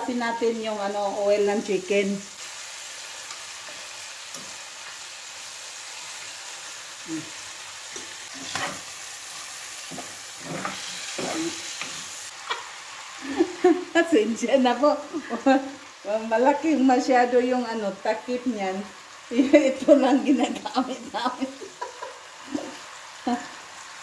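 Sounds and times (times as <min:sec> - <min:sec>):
chicken sizzling in oil: 0:00.0 - 0:24.0.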